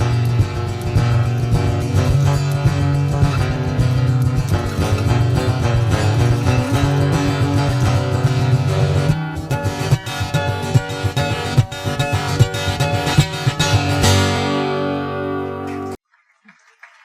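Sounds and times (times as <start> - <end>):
acoustic guitar strummed and picked: 0.0 - 16.0.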